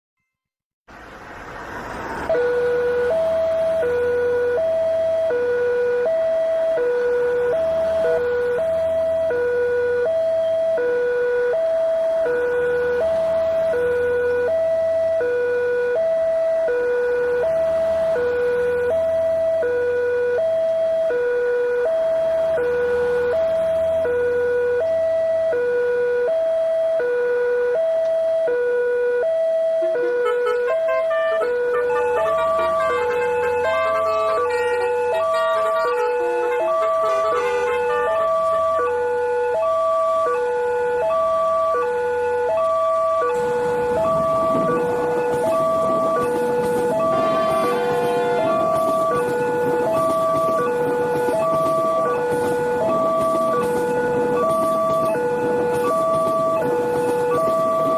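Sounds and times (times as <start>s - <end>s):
two-tone crossing warning alarm: 0.9s - 57.9s
broad rushing noise: 43.3s - 51.2s.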